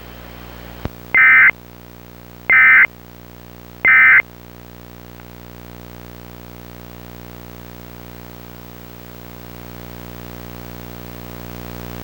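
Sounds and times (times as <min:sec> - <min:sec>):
steady low hum: 0:00.1 - 0:01.5, 0:03.6 - 0:04.2
warbling digital data tones: 0:01.2 - 0:01.5.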